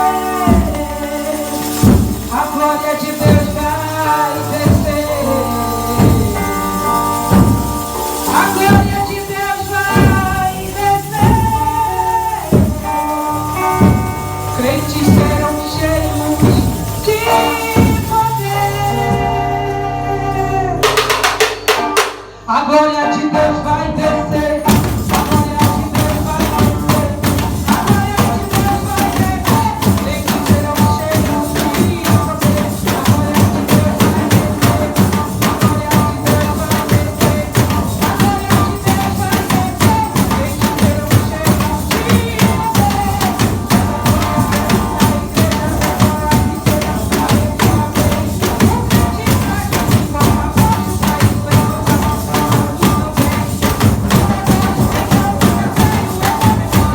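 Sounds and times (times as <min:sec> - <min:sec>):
band percussion beat: 0:00.0 - 0:20.0, 0:20.8 - 0:22.5, 0:24.2 - 0:56.9
sustained melody line: 0:03.2 - 0:27.6.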